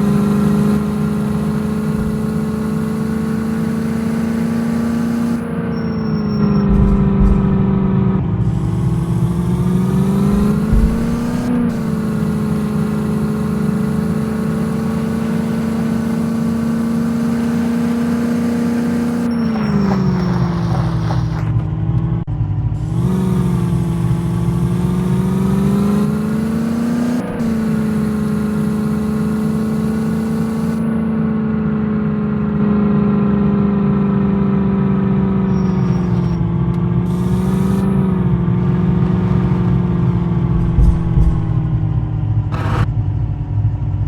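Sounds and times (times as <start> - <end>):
car engine running under load: 0.0 - 44.0
hiss: 8.4 - 14.3.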